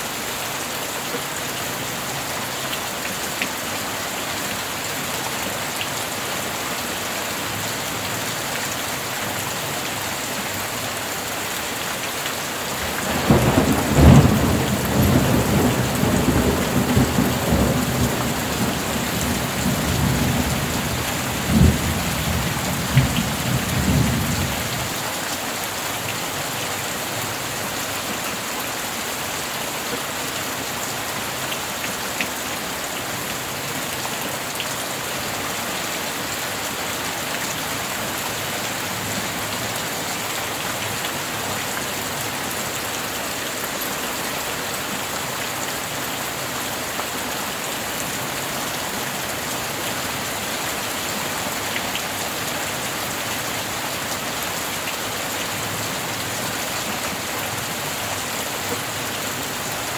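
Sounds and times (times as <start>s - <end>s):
steady rain: 0.0s - 59.9s
thunder rumbling: 12.8s - 24.9s.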